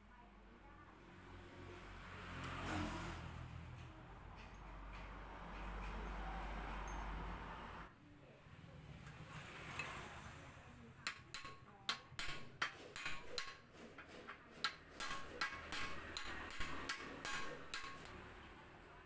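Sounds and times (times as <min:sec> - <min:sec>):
metal tools clicking and tapping: 0:03.7 - 0:07.2, 0:11.0 - 0:18.5.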